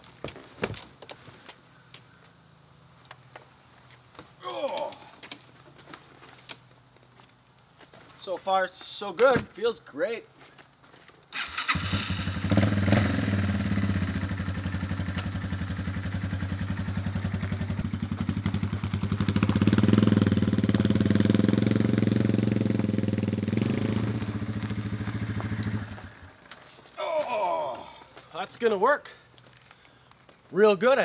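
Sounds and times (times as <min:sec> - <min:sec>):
small engine idling: 0:11.4 - 0:26.4.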